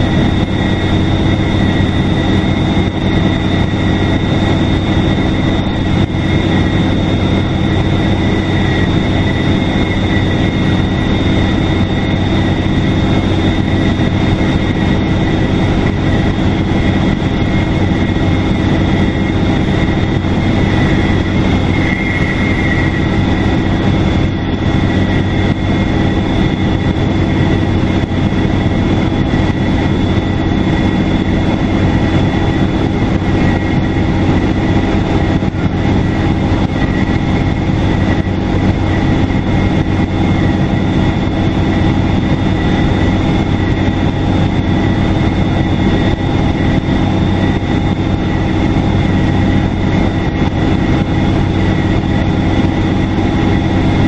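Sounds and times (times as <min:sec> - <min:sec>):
diesel bus engine hum: 0:00.0 - 0:54.0
turbocharger whistle: 0:21.6 - 0:23.6.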